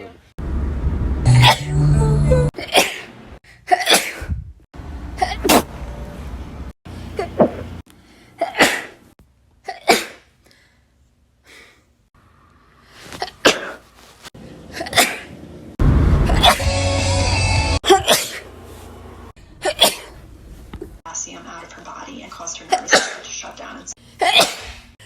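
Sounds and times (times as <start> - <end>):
person sneezing: 3.7 - 4.3, 5.2 - 5.7, 7.2 - 7.6, 8.4 - 9.0, 9.7 - 10.3, 13.1 - 13.8, 14.8 - 15.3, 16.3 - 16.7, 17.8 - 18.5, 19.6 - 20.1, 24.2 - 24.9.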